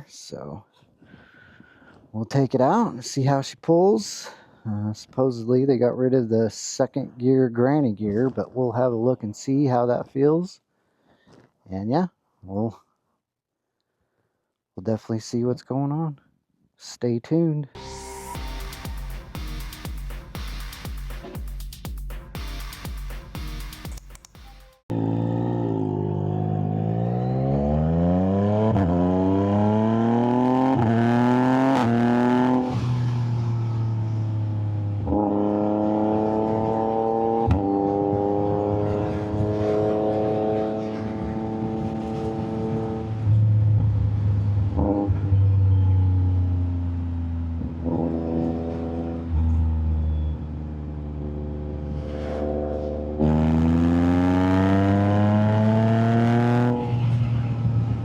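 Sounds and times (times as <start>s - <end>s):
motorcycle engine accelerating: 24.7s - 58.0s.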